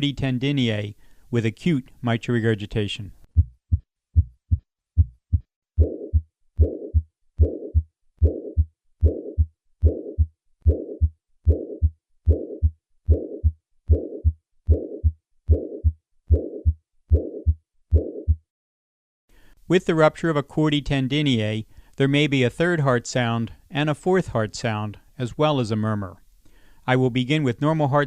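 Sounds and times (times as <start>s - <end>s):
heartbeat through stethoscope: 3.3s - 18.5s
whooshing heart murmur: 3.4s - 17.2s.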